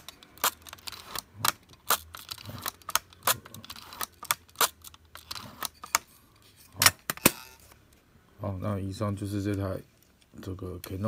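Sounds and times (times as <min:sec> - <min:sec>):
camera metal clicks and snaps: 0:00.0 - 0:06.1.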